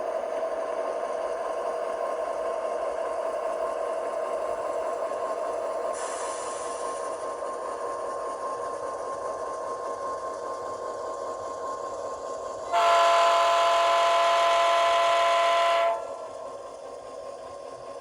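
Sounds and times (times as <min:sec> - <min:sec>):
air horn blast: 0:12.7 - 0:16.2.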